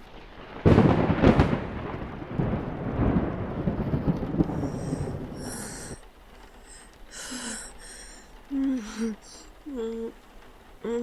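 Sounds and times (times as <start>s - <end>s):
thunder clap rolling into rumble: 0.1s - 7.1s.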